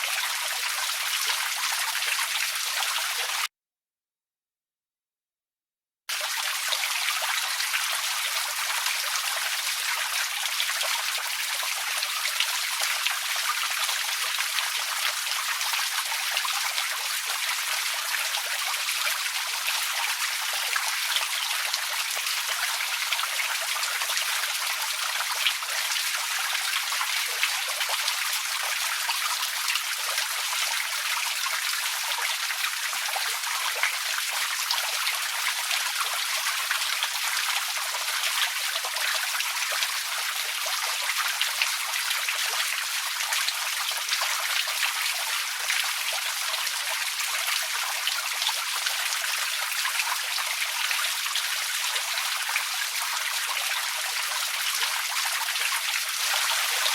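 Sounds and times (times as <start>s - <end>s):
fountain water splashing: 56.2s - 56.9s.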